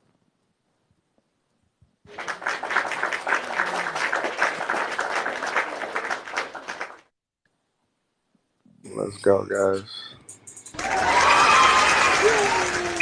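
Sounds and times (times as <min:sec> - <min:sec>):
crowd clapping: 0:02.1 - 0:07.1, 0:10.8 - 0:13.0.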